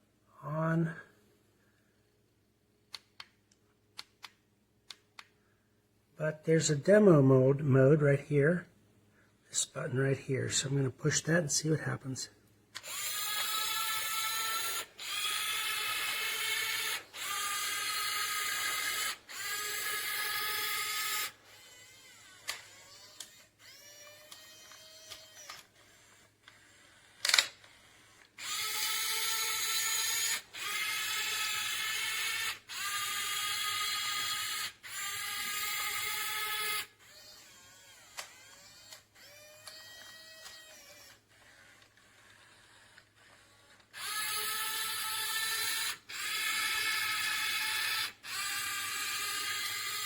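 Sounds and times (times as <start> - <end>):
small electric motors whining: 12.8 - 50.0.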